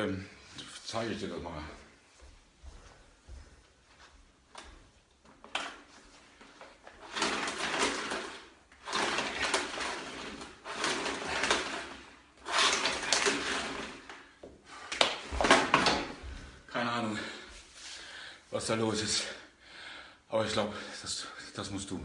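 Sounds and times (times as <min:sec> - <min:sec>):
rustling clattering handling noise: 0:04.6 - 0:14.3.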